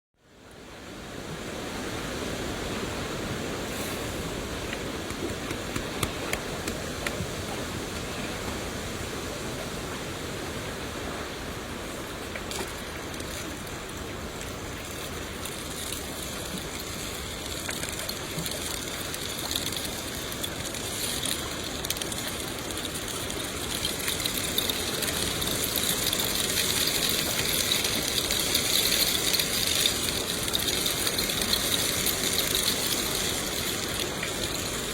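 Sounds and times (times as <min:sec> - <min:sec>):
steady rain falling: 0:00.2 - 0:34.9
water drips ticking: 0:14.4 - 0:34.9.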